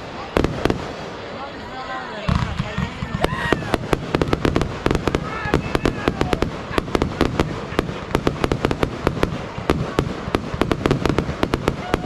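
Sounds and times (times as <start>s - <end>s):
fireworks cracks and bangs: 0.0s - 12.0s
rumble of firework bursts: 0.0s - 12.0s.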